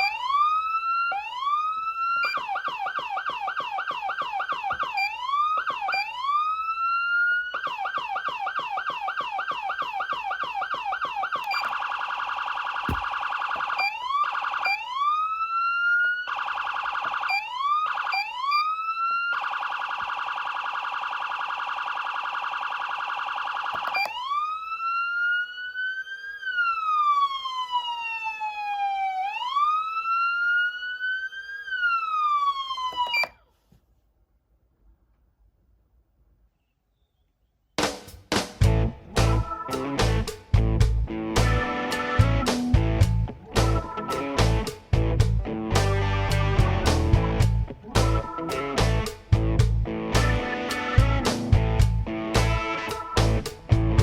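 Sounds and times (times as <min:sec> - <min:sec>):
siren whoops: 0:00.0 - 0:33.4
electronic siren yelp: 0:00.0 - 0:33.5, 0:39.3 - 0:40.0, 0:41.5 - 0:42.6, 0:43.6 - 0:44.8, 0:46.3 - 0:49.2, 0:52.6 - 0:54.0
siren wail: 0:00.0 - 0:33.5, 0:46.2 - 0:48.8, 0:50.3 - 0:54.0.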